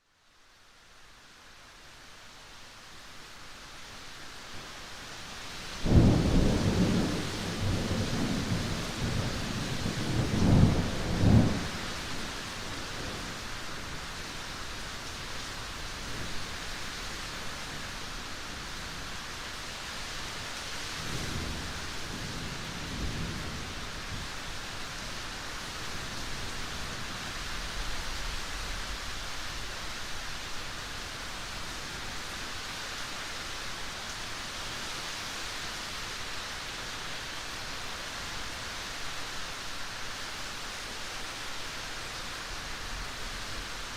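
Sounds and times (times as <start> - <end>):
steady rain: 0.0 - 43.9
thunder rumbling: 5.9 - 11.8.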